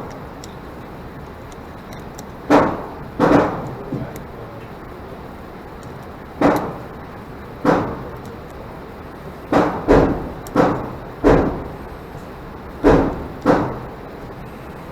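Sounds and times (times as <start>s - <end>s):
pistol shots with echo: 2.5s - 3.8s, 7.6s - 8.2s, 9.5s - 11.8s, 12.8s - 14.0s.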